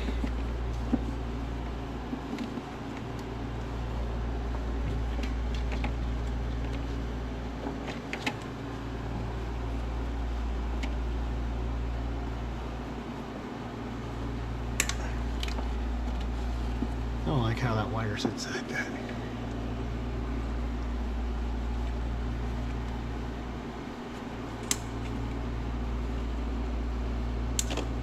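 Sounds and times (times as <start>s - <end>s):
steady low hum: 0.0s - 28.0s
wires clicking and rustling: 4.8s - 7.0s, 14.6s - 17.1s.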